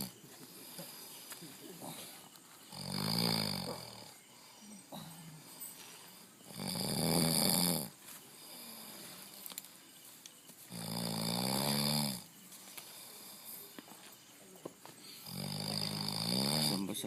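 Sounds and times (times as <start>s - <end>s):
loud rattling snores: 0.0s - 1.1s, 2.7s - 4.2s, 6.4s - 9.0s, 10.7s - 12.3s, 15.2s - 17.0s
quiet breaths: 0.0s - 17.0s.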